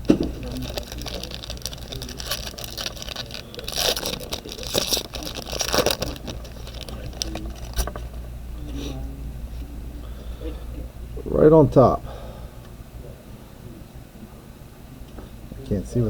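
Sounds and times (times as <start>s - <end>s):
card packaging crackling and rustling: 0.0s - 8.3s
steady low hum: 0.0s - 16.0s.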